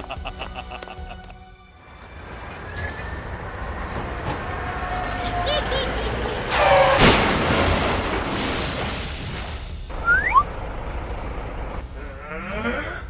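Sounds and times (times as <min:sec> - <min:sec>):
short rising whistles: 0:10.0 - 0:10.5.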